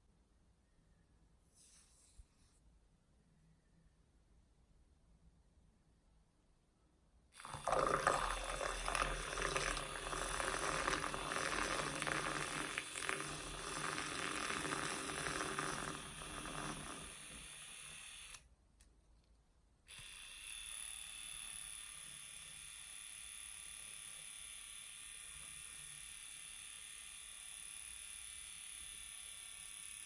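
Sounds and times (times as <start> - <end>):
liquid pouring into a cup: 7.4 - 17.4.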